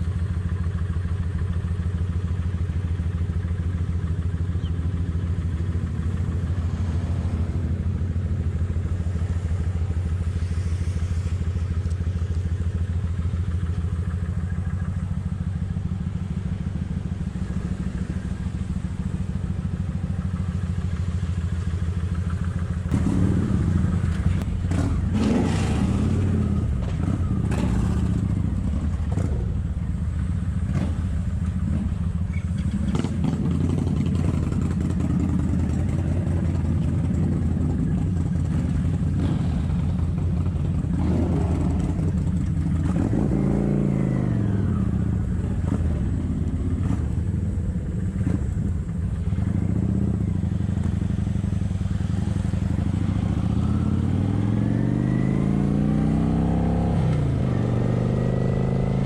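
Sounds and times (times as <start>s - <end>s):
motorcycle engine running: 0.0s - 59.0s.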